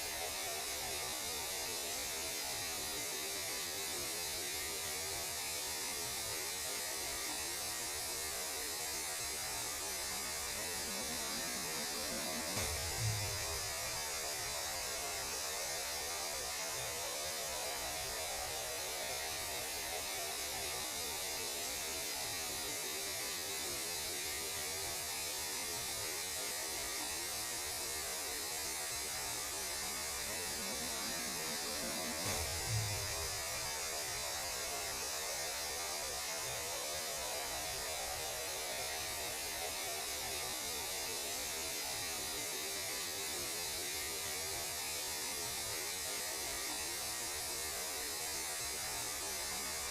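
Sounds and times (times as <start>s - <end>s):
electronic static hiss: 0.0s - 49.9s
low hum: 10.9s - 14.0s.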